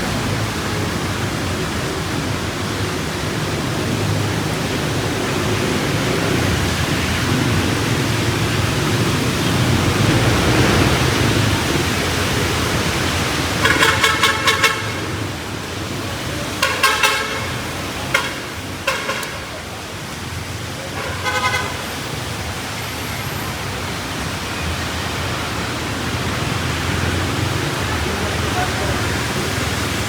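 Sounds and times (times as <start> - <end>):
passing traffic: 0.0 - 30.0
rain hiss: 0.0 - 30.0
vehicle horns honking: 13.4 - 15.5, 16.4 - 19.8, 20.9 - 22.2.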